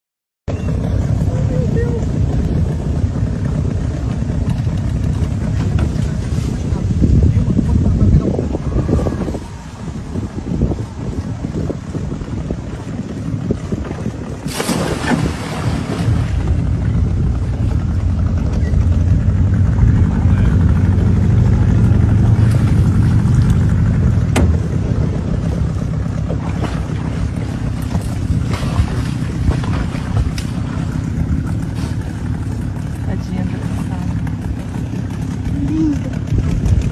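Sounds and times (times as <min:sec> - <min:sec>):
boat engine rumbling: 0:00.5 - 0:36.9
wind buffeting microphone: 0:00.6 - 0:36.9.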